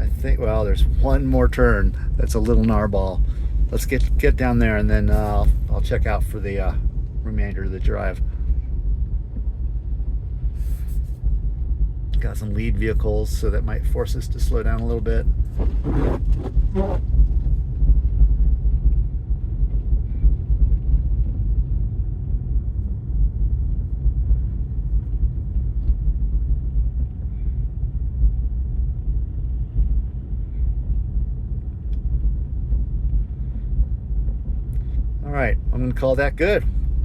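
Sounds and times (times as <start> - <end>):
tyre and road noise in car: 14.4 - 37.0.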